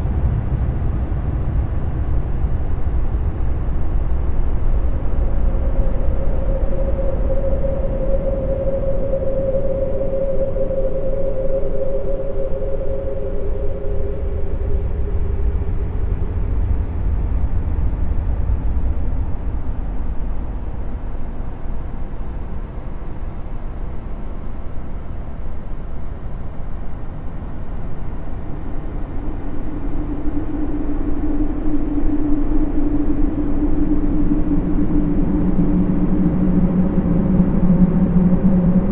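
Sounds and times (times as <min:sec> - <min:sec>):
humming tone: 0:00.0 - 0:19.5, 0:27.4 - 0:38.9
low rumbling drone: 0:00.0 - 0:38.9
lower hum: 0:00.0 - 0:38.9.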